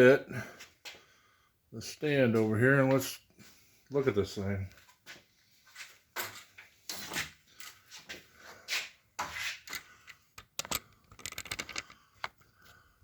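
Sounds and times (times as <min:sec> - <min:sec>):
stand scraping and knocking: 0:09.2 - 0:12.4
rattling clicks: 0:09.7 - 0:12.4.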